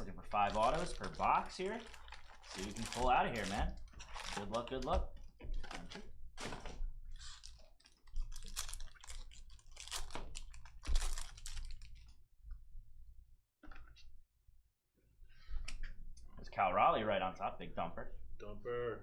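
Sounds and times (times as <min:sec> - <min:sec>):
packaging crinkling and ripping: 0:00.0 - 0:04.9, 0:05.7 - 0:12.1.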